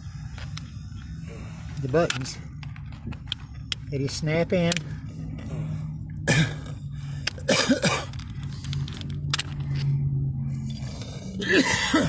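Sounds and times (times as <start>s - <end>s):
steady low hum: 0.0s - 12.0s
person coughing: 6.2s - 8.2s, 11.4s - 12.0s.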